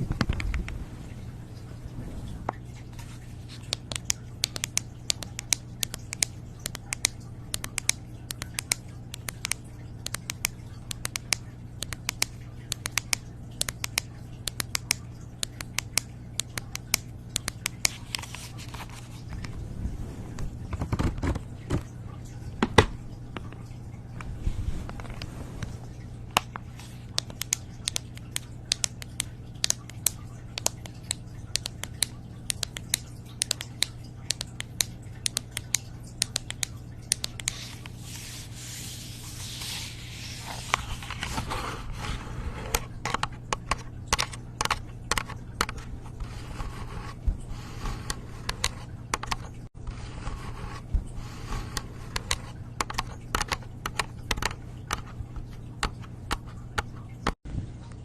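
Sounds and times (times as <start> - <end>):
continuous scratching: 17.5 - 19.6, 37.2 - 57.3.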